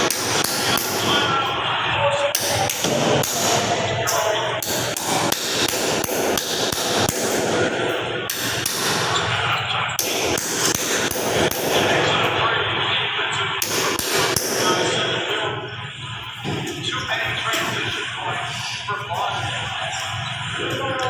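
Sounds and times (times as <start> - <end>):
hammering strikes: 0.0 - 12.4, 13.5 - 15.6
continuous noisy background: 0.0 - 21.0.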